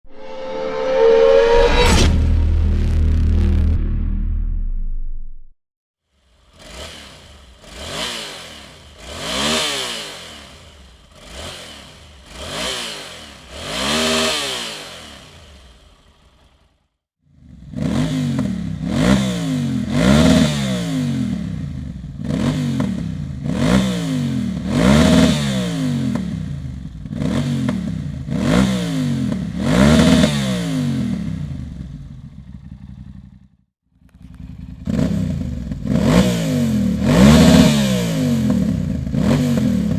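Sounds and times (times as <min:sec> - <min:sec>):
motorcycle engine revving: 0:06.2 - 0:39.9.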